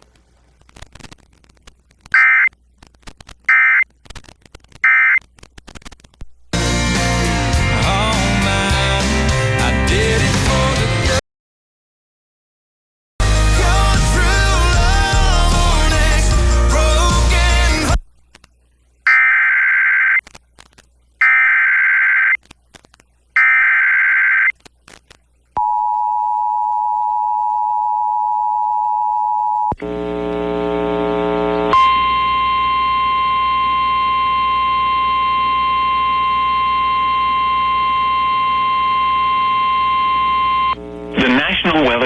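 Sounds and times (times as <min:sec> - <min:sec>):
digital header data bursts: 0:02.2 - 0:02.5, 0:03.5 - 0:03.8, 0:04.8 - 0:05.2
two-tone attention signal: 0:02.2 - 0:02.5, 0:04.8 - 0:05.2, 0:19.1 - 0:20.2, 0:31.7 - 0:40.8
steady single tone: 0:31.6 - 0:40.8.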